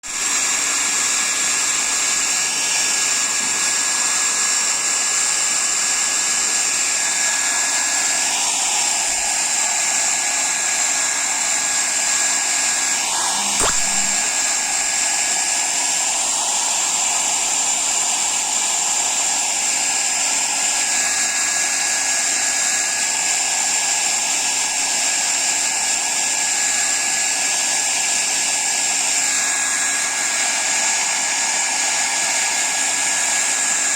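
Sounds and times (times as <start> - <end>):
hair dryer blowing with whine: 0.0 - 33.9
short click: 13.1 - 14.3.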